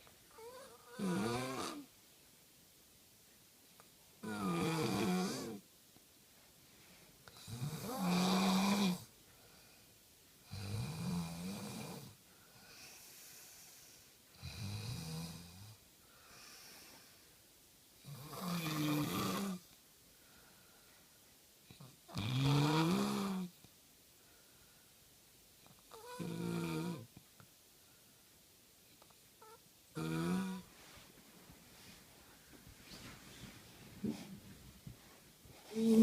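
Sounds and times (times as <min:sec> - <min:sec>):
loud snores: 0:00.4 - 0:01.9, 0:04.2 - 0:05.6, 0:07.3 - 0:09.1, 0:10.5 - 0:12.2, 0:14.4 - 0:15.8, 0:18.0 - 0:19.6, 0:22.1 - 0:23.5, 0:25.9 - 0:27.1, 0:29.4 - 0:30.7
faint breaths: 0:09.1 - 0:10.5, 0:12.1 - 0:14.4, 0:16.0 - 0:17.5, 0:20.0 - 0:22.1, 0:24.1 - 0:25.2, 0:30.5 - 0:36.0.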